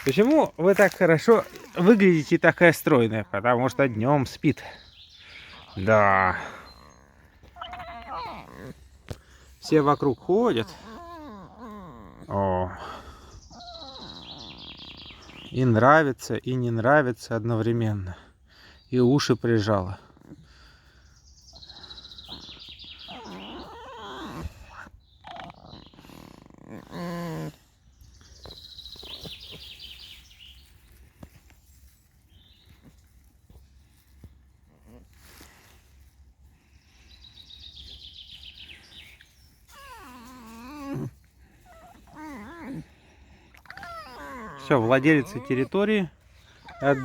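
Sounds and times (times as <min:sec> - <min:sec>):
fox chattering trill: 0:05.6 - 0:08.8, 0:13.6 - 0:15.5, 0:43.6 - 0:47.0
fox squeaking and whining: 0:06.4 - 0:12.3, 0:13.5 - 0:15.4, 0:22.3 - 0:27.6, 0:39.4 - 0:47.0.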